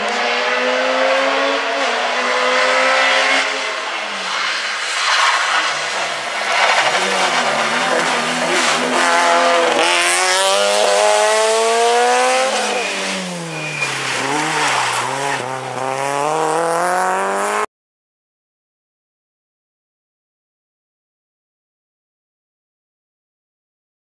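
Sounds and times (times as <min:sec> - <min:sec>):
rally car engine at full throttle: 0:00.0 - 0:17.7.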